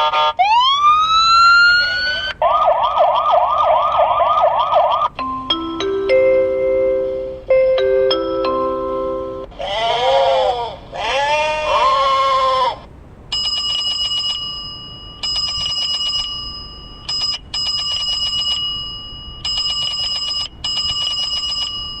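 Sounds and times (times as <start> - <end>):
animal call effect from speaker: 9.5 - 12.9
rapid bicycle-bell-like ring: 13.4 - 22.0.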